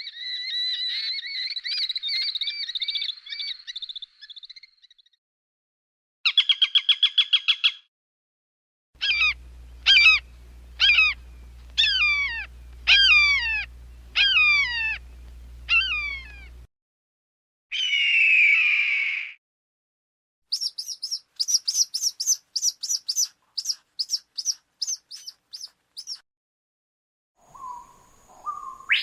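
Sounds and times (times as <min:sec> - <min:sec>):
falcon calls: 0:09.0 - 0:11.2, 0:11.8 - 0:15.0, 0:15.7 - 0:16.6, 0:27.6 - 0:29.0
low steady hum: 0:09.0 - 0:16.7.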